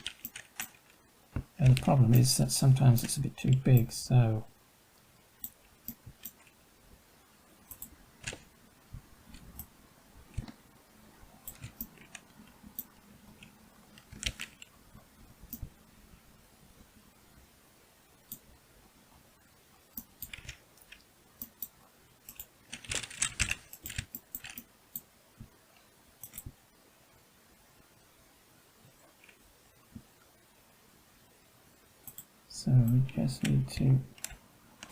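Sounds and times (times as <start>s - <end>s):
keyboard and mouse clicks: 0.0s - 2.3s, 5.4s - 6.6s, 7.6s - 8.5s, 10.3s - 10.6s, 11.4s - 14.7s, 19.9s - 25.5s, 26.2s - 26.6s, 32.0s - 34.9s.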